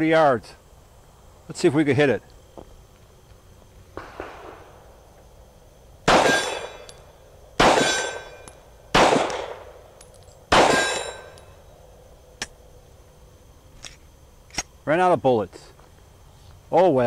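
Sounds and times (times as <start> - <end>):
pistol shots: 4.0 - 4.8, 6.0 - 6.9, 7.6 - 9.9, 10.5 - 11.4
steel plate clanging: 6.2 - 7.0, 7.8 - 8.5, 10.6 - 11.5.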